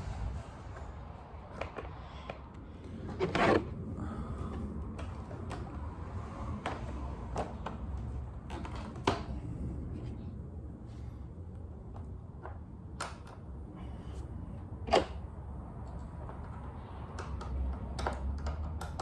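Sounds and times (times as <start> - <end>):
plastic scrape: 2.9 - 3.8.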